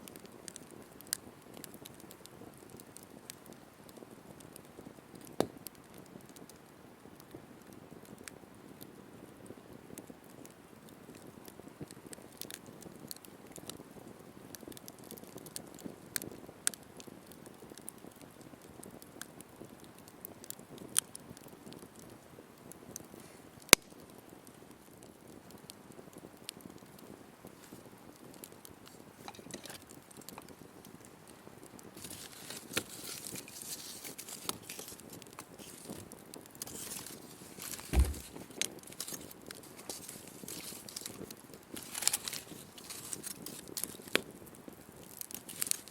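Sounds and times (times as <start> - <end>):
campfire crackling and popping: 0.0 - 45.9
dull low thump: 37.8 - 38.4.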